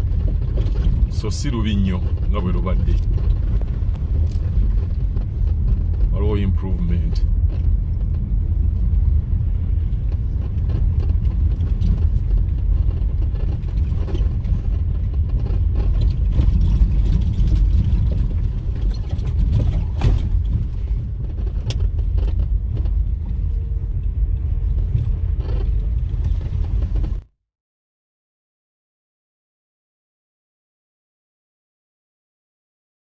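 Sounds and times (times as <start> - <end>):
vehicle rumbling on dirt road: 0.0 - 27.3
knocks and rattles: 10.1 - 27.2.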